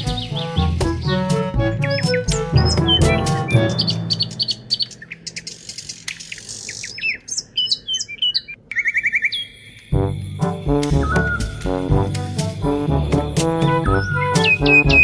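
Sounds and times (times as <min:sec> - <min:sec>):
music: 0:00.0 - 0:05.1, 0:10.0 - 0:15.0
birds chirping: 0:00.0 - 0:15.0.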